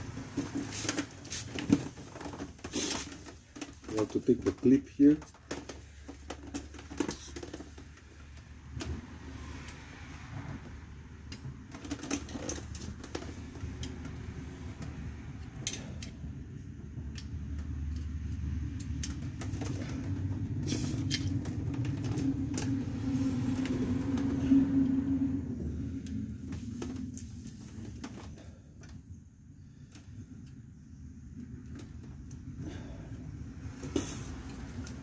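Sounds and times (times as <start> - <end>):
low engine-like rumble: 0.0 - 35.0.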